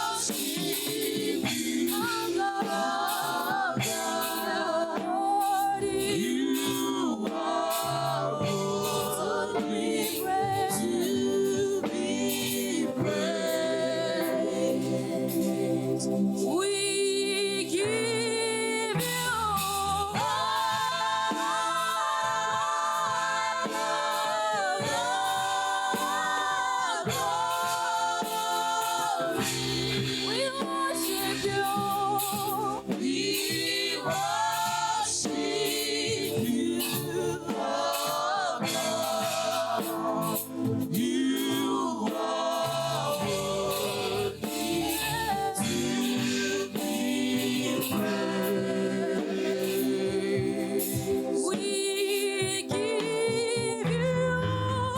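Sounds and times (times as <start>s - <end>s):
choir singing in harmony: 0.0s - 54.9s.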